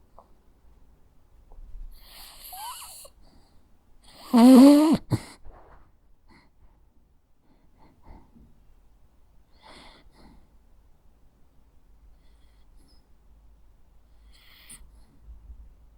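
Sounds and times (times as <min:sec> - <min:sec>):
dog snoring: 0:01.9 - 0:03.1, 0:04.1 - 0:05.3
faint whistling breath: 0:12.2 - 0:13.2.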